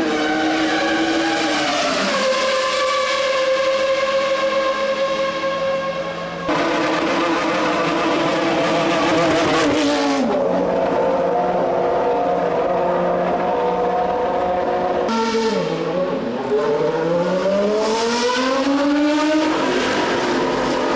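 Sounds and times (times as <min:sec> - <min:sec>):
louder racing car passing: 0:00.0 - 0:20.9
racing car engines whining: 0:00.0 - 0:20.9.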